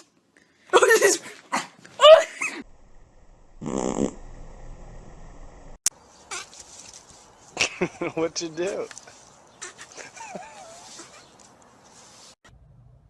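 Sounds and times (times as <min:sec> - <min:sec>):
short low buzzing: 0:02.6 - 0:05.8.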